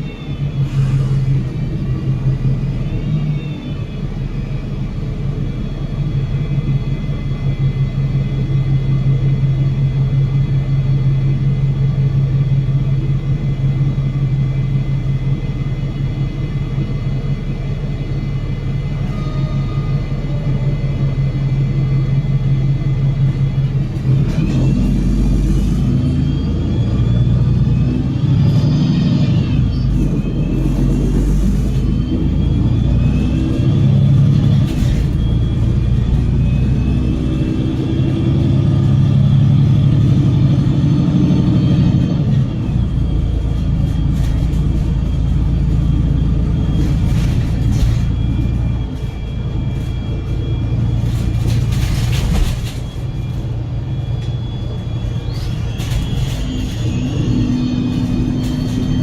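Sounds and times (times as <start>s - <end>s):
bus drivetrain humming and whining: 0.0s - 59.0s.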